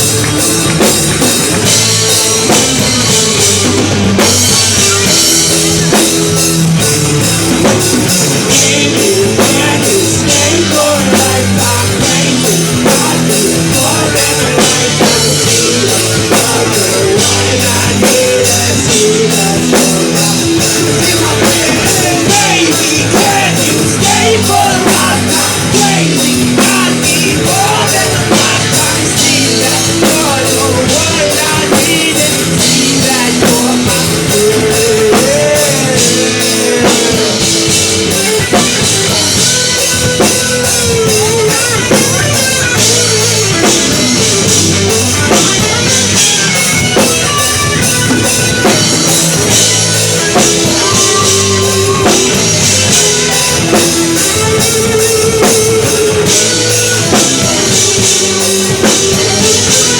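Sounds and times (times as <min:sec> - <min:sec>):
electric guitars and bass: 0:00.0 - 0:59.9
fast drum kit: 0:00.0 - 0:59.9
person singing: 0:00.0 - 0:59.9.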